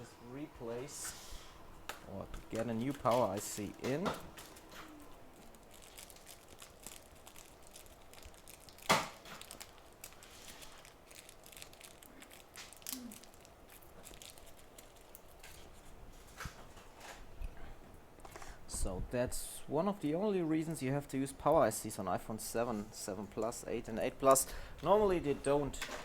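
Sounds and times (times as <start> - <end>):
rustling: 0.8 - 17.3.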